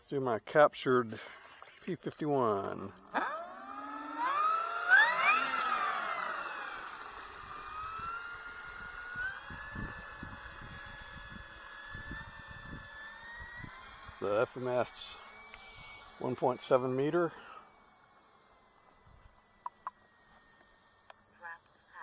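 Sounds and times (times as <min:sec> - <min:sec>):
electric motor and propeller whining: 0:01.0 - 0:22.0
wind rumbling on microphone: 0:09.1 - 0:13.8.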